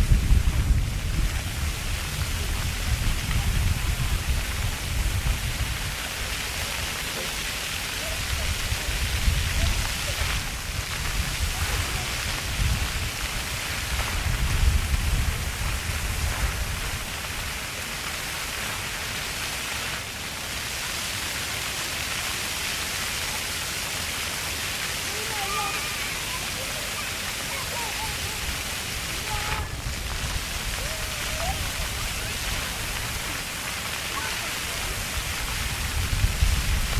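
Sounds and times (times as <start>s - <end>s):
fountain water splashing: 0.0s - 36.9s
children's voices: 11.4s - 12.4s, 25.0s - 30.0s, 30.6s - 35.0s.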